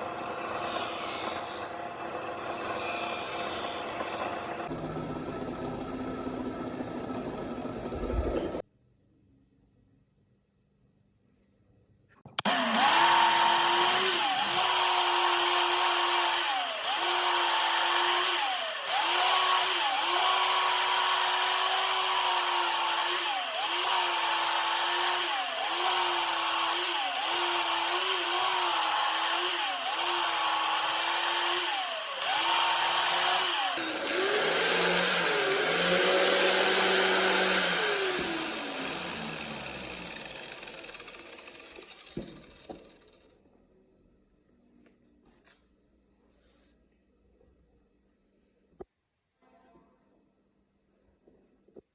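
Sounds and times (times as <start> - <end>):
electric grinder on metal: 0.0 - 4.8, 12.4 - 43.0.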